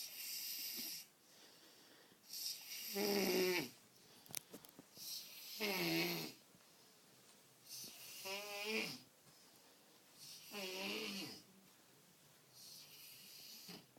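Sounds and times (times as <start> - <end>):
quiet breathing: 0.0 - 13.9
man snoring: 2.3 - 3.7, 5.4 - 6.4, 8.0 - 9.0, 10.4 - 11.4.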